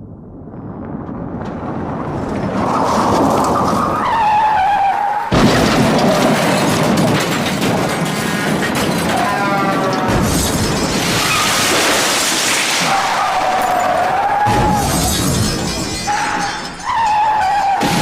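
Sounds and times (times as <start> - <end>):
wreck crashing and clattering: 0.3 - 18.0
tyres squealing: 3.3 - 6.8, 7.9 - 11.7, 12.7 - 18.0
loud crash impact: 5.3 - 9.2, 10.0 - 13.4.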